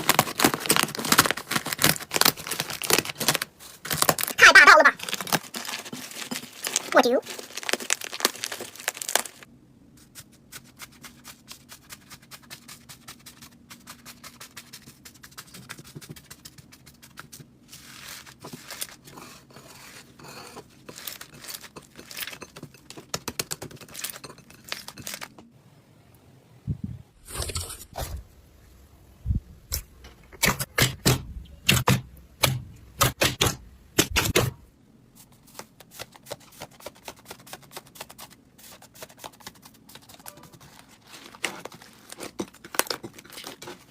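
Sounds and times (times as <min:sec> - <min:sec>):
slime crackling and popping: 0:05.0 - 0:09.5.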